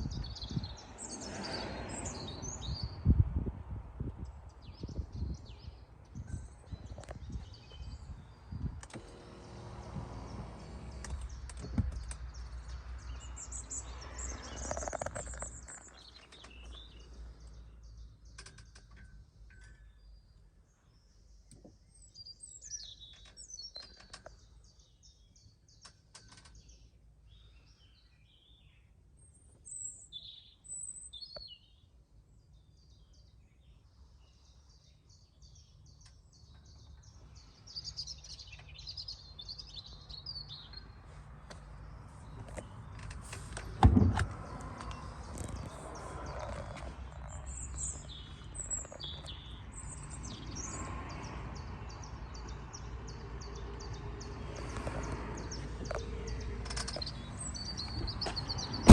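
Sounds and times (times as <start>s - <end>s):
small birds chirping: 0.0s - 3.1s, 4.2s - 58.9s
sharp clicks: 10.8s - 12.4s.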